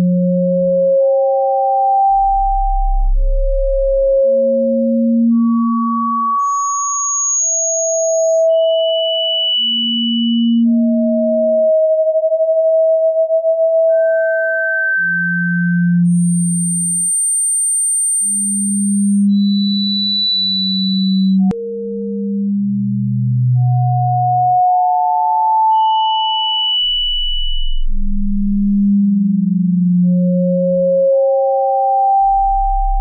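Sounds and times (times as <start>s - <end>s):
high sine tones changing pitch: 0.0s - 22.6s, 23.4s - 33.0s
low hum tone: 18.2s - 25.1s, 26.9s - 31.4s, 32.2s - 33.0s.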